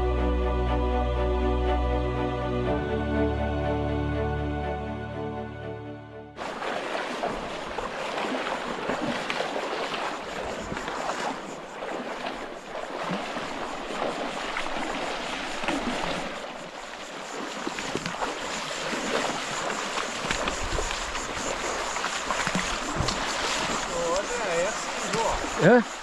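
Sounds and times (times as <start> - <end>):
small water splashes: 6.4 - 26.0
water rushing over rocks: 6.4 - 26.0.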